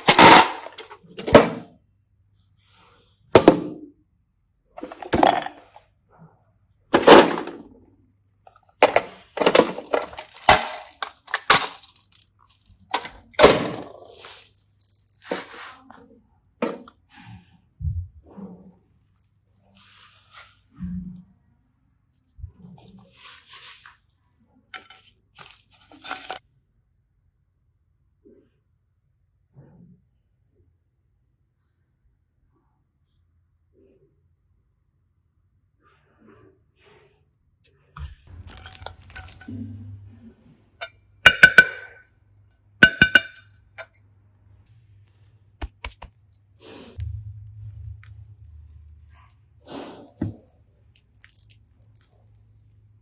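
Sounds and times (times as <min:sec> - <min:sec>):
hard containers clinking together: 0:00.0 - 0:01.6, 0:04.8 - 0:05.8, 0:08.6 - 0:16.0, 0:40.8 - 0:42.0, 0:42.8 - 0:43.6
slime squelching: 0:45.6 - 0:53.0.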